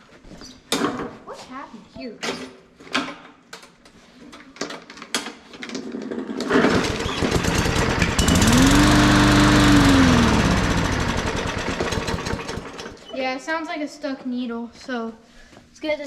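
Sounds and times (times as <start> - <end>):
push-mower engine running rough: 6.4 - 13.0
engine knocks: 6.5 - 13.0.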